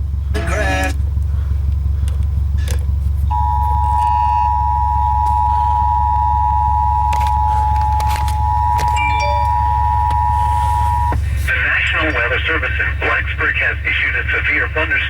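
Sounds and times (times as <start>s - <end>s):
steady low hum: 0.0s - 15.0s
two-tone alert signal: 3.3s - 11.2s.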